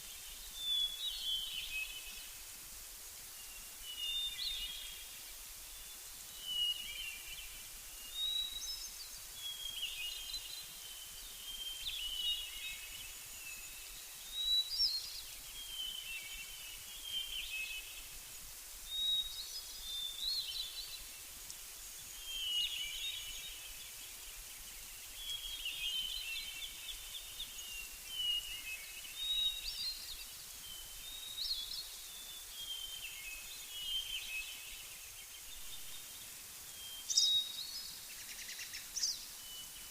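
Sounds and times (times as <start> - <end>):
faint steady hiss: 0.0 - 39.9
songbirds singing: 0.0 - 39.9.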